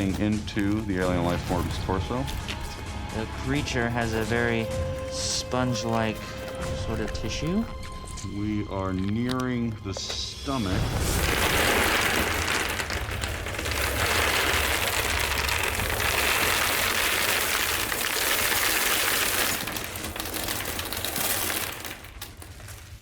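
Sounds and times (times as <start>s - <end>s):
hard candies pouring and pattering: 0.0s - 23.0s.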